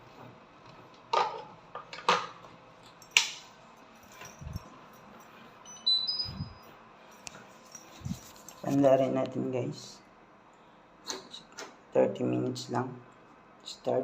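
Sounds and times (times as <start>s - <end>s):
electronic beeps rising in pitch: 5.7s - 6.7s.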